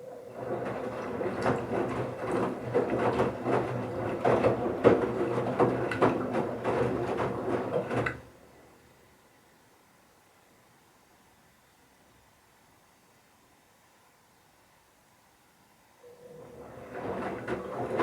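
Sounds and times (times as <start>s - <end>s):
clatter of tumbling laundry: 0.0s - 8.7s, 16.2s - 18.0s
washing machine motor hum: 0.0s - 9.0s, 16.0s - 18.0s.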